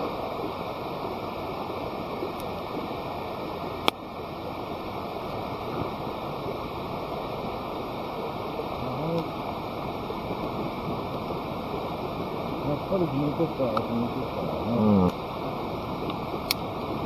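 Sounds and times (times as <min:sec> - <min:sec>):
campfire crackling: 0:00.0 - 0:17.0
burning wood popping: 0:03.7 - 0:17.0.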